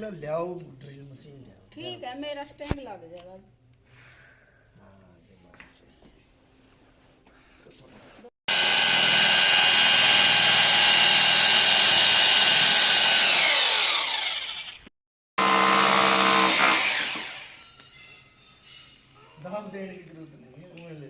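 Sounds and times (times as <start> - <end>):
electric drill running: 8.5 - 17.6.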